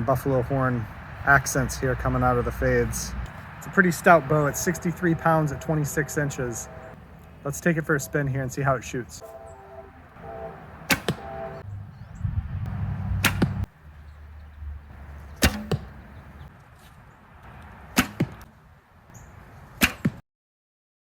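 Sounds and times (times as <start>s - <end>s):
arrow knock: 10.9s - 11.2s, 13.2s - 13.7s, 15.4s - 16.0s, 18.0s - 18.4s
bow string snapping: 13.2s - 13.7s.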